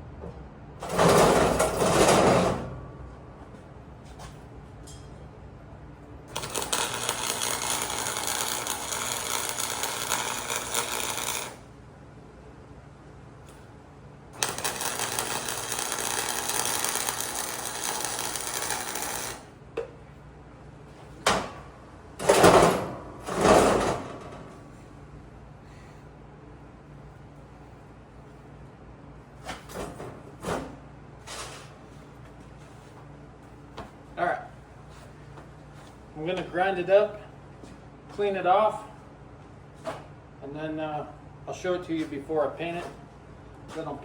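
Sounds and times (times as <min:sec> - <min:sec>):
arc welding crackling and buzzing: 0:06.3 - 0:11.7, 0:14.4 - 0:19.6.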